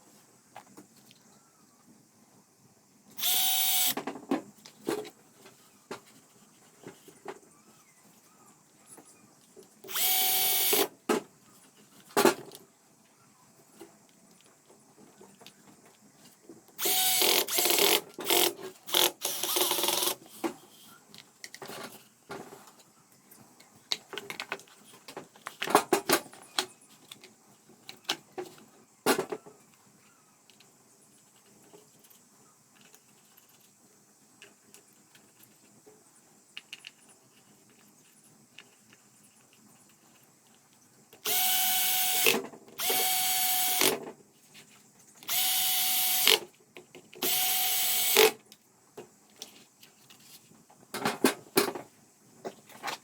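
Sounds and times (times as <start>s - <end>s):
power drill bursts: 3.2s - 4.0s, 9.9s - 10.9s, 16.8s - 20.2s, 41.2s - 44.0s, 45.2s - 46.4s, 47.2s - 48.4s.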